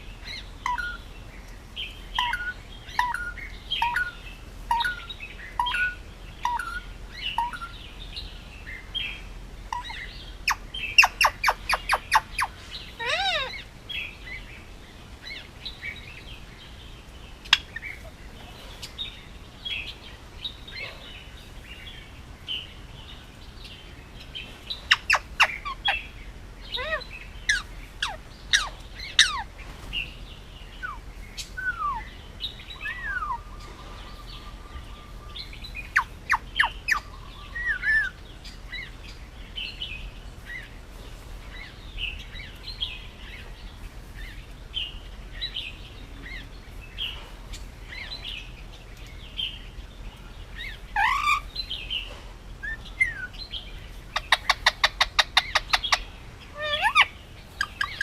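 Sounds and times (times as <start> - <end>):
parakeet chirping and calling: 0.0 - 14.5, 24.2 - 40.8, 50.5 - 58.0.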